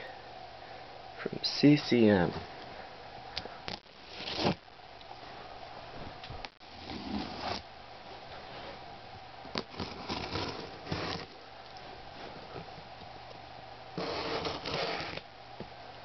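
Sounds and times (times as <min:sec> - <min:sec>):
faint steady hum: 0:00.0 - 0:16.0
cardboard box rustling and scraping: 0:04.0 - 0:04.6, 0:06.6 - 0:07.6, 0:09.6 - 0:11.3, 0:14.0 - 0:15.2.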